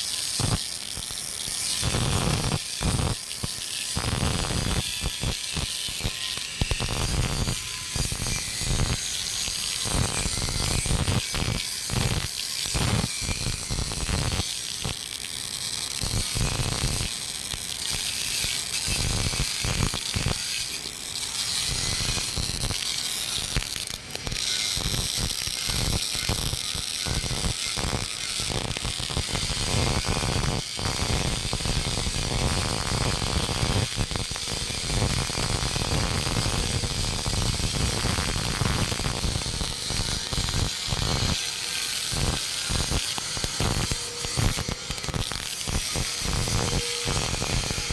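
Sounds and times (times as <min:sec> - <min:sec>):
welding arc crackling and buzzing: 0:00.0 - 0:47.9.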